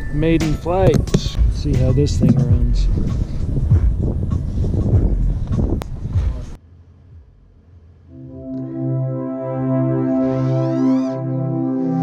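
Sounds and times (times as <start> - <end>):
wind buffeting microphone: 0.8 - 6.6.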